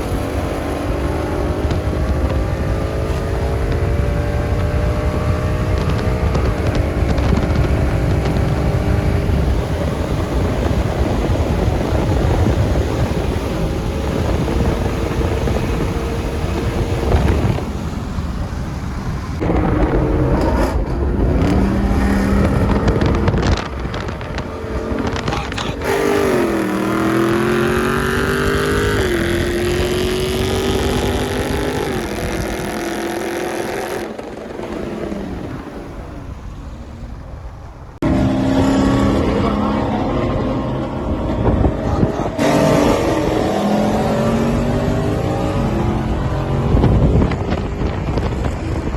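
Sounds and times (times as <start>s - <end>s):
car engine accelerating: 0.0s - 48.9s.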